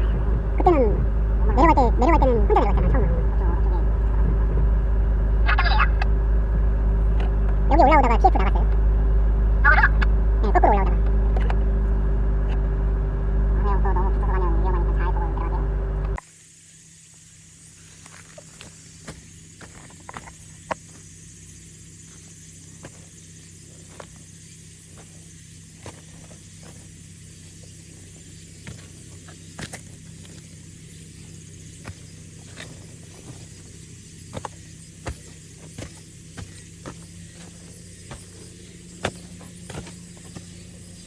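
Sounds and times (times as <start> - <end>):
vehicle engine running at low revs: 0.0 - 41.0
sharp clicks and creaks: 11.0 - 11.7
steady high hiss: 16.2 - 41.0.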